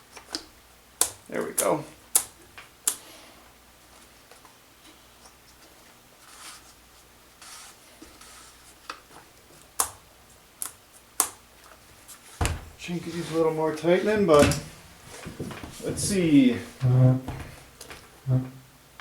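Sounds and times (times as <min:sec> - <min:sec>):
soft scraping: 0:12.2 - 0:18.6.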